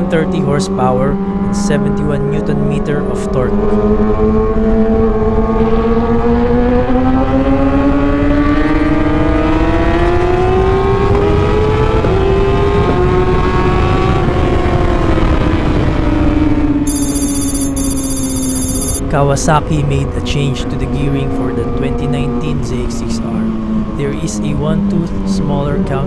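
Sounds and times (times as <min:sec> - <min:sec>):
motorcycle engine revving: 0:00.0 - 0:26.0
heavy low rumble: 0:18.8 - 0:25.2.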